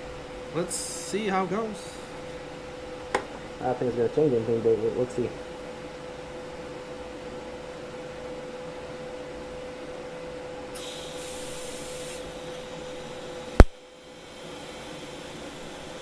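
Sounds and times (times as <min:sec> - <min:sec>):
welder electrical hum: 0:00.0 - 0:16.0
sharp click: 0:13.6 - 0:13.8.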